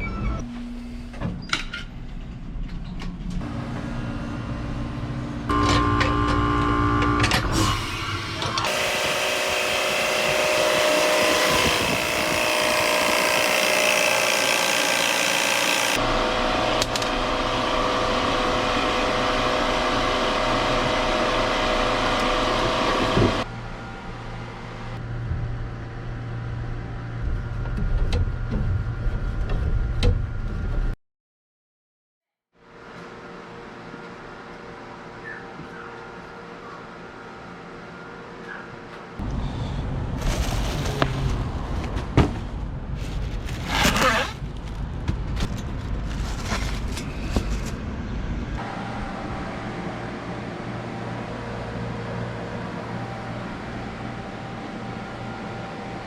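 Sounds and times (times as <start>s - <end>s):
power tools and machinery running: 3.4s - 27.2s, 48.6s - 56.0s.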